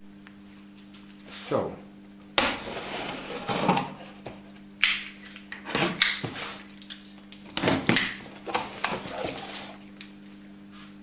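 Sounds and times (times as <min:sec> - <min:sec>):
packaging scrapes and rustles: 0:02.6 - 0:04.2, 0:08.3 - 0:09.8.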